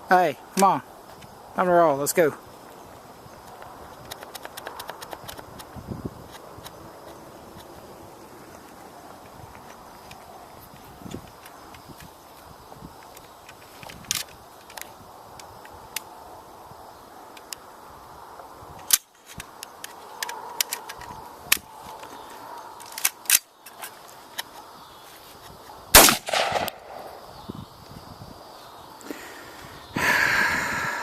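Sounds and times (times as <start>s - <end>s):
small clicks and knocks: 3.5s - 5.7s
rifle shots: 26.0s - 27.2s.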